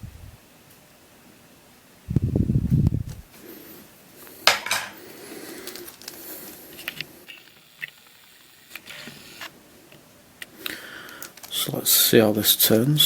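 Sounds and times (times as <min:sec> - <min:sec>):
puzzle cube plastic clicks: 0:06.8 - 0:11.6.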